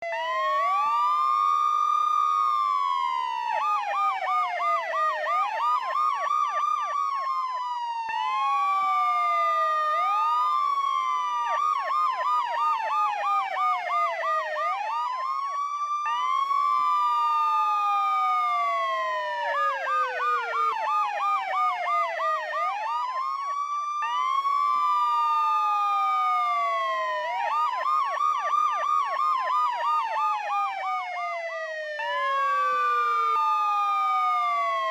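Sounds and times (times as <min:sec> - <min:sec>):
police sirens wailing: 0:00.0 - 0:34.9
siren yelping sweeps: 0:00.0 - 0:34.9.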